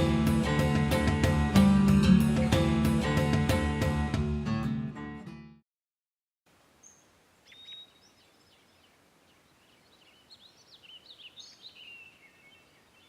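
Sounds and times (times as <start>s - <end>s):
steady outdoor hiss: 6.5s - 13.0s
birds chirping and whistling: 6.8s - 8.9s, 9.6s - 13.0s.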